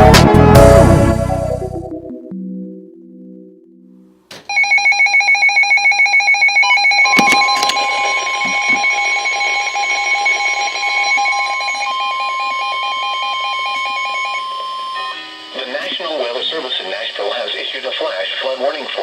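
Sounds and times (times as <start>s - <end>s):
soft synth chord: 0.6s - 4.2s
rapid electronic beeping alarm: 4.5s - 17.9s
steady warning tone: 4.5s - 19.0s.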